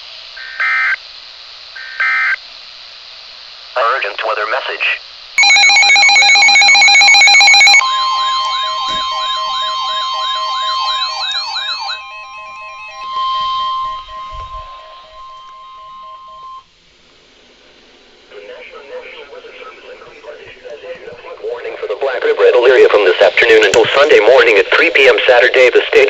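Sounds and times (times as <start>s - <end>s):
steady single-pitch tone: 5.4s - 16.7s
warbling siren tone: 5.4s - 16.7s.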